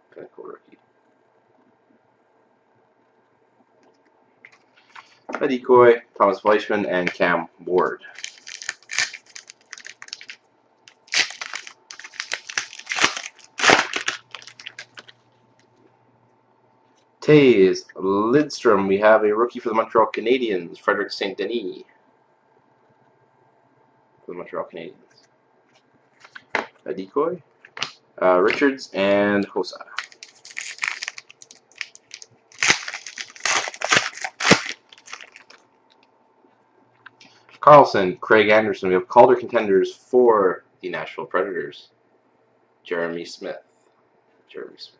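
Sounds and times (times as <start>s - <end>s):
cards and packaging rustling: 7.8s - 15.2s, 29.9s - 35.6s
wrapper crinkling and crumpling: 8.1s - 15.3s, 29.9s - 35.6s.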